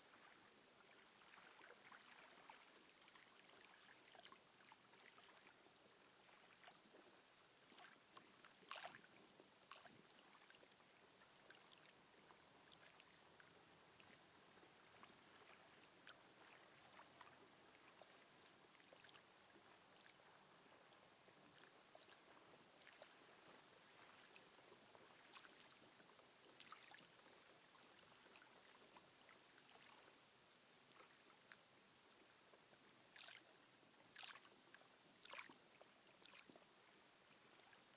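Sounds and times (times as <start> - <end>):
lake water lapping: 0.1 - 5.6, 7.7 - 30.1, 33.1 - 33.5, 34.1 - 36.7
water splashes: 8.6 - 10.7, 14.8 - 19.3, 23.9 - 30.1, 33.1 - 33.5, 34.1 - 34.5, 35.2 - 35.6, 36.2 - 36.7.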